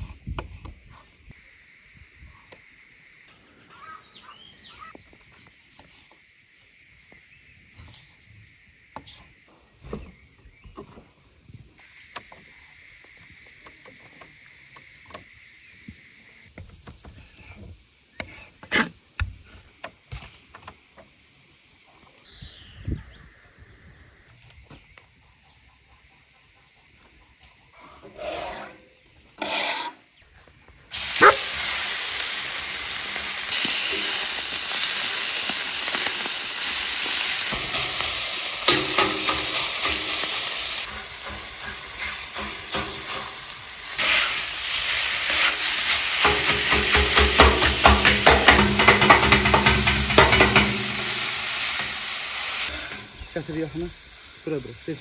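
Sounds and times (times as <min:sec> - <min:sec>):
dog barking: 0:31.2 - 0:31.6.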